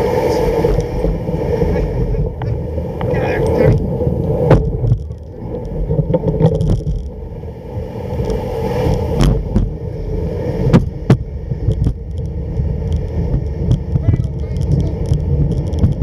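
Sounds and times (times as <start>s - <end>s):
sled runners scraping over snow: 0.0s - 16.0s.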